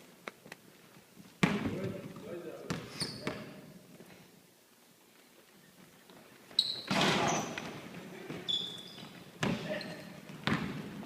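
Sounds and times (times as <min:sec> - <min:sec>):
high squeak: 0:06.6 - 0:07.6, 0:08.5 - 0:09.2.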